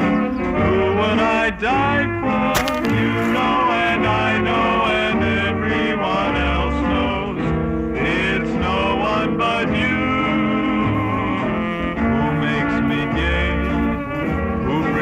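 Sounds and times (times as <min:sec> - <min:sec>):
country instrumental with bass and guitar: 0:00.0 - 0:15.0.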